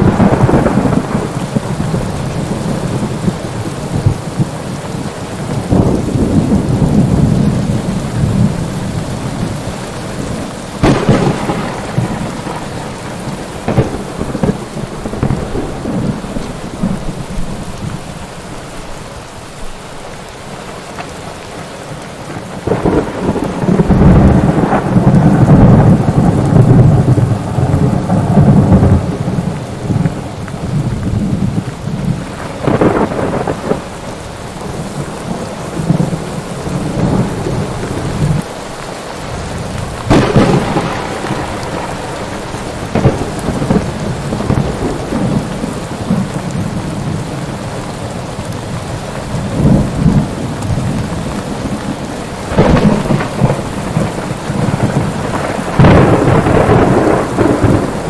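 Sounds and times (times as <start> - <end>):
sharp thunder cracks: 0.0 - 3.4, 10.8 - 17.5, 22.6 - 30.2, 32.1 - 33.9, 39.4 - 46.4, 52.4 - 58.0
rolling thunder: 0.0 - 18.2, 22.4 - 38.5, 39.2 - 58.0
heavy rain: 0.0 - 58.0.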